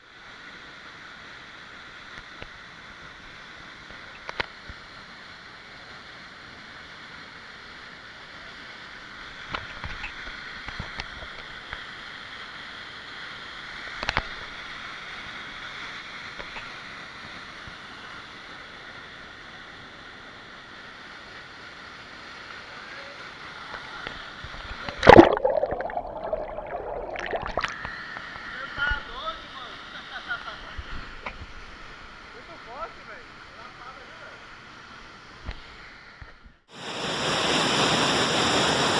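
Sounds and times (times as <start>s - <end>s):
water flowing: 24.8s - 27.8s.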